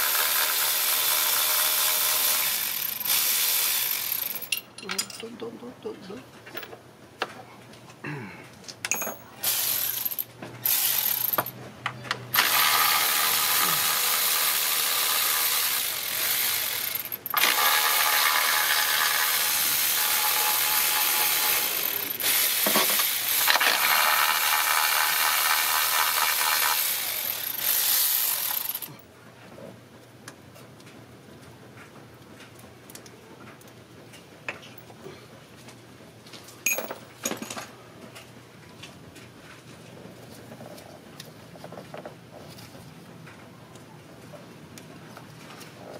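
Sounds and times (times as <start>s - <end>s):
ratchet wrench spinning: 0.0s - 4.6s, 9.4s - 11.5s, 12.4s - 28.9s.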